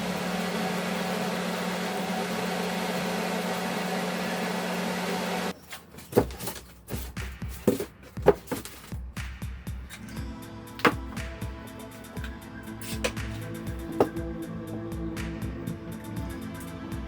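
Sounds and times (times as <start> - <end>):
small electric motor humming: 0.0 - 5.5
background music with a beat: 7.0 - 17.0.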